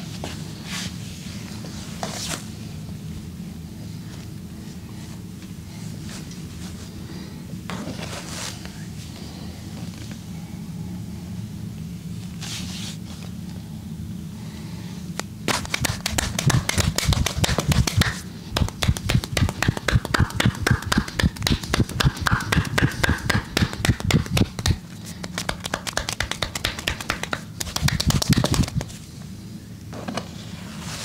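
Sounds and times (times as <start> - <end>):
hands slapping body: 15.5 - 28.9.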